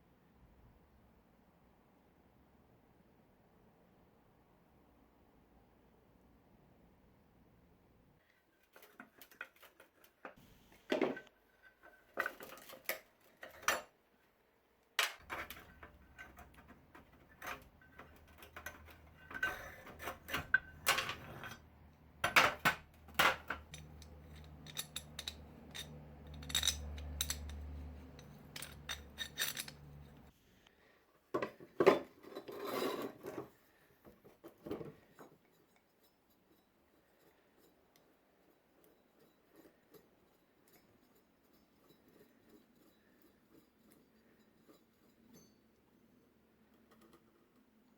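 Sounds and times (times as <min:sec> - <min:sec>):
metal tools clinking and knocking: 0:10.9 - 0:13.9, 0:15.0 - 0:30.3.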